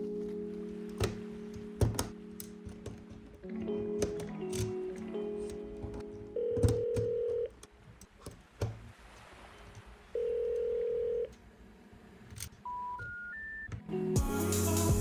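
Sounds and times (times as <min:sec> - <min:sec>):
telephone ringback beeps: 0:06.3 - 0:07.5, 0:10.2 - 0:11.3, 0:12.6 - 0:13.7
rising three-tone telephone signal: 0:10.2 - 0:11.3, 0:12.7 - 0:13.7.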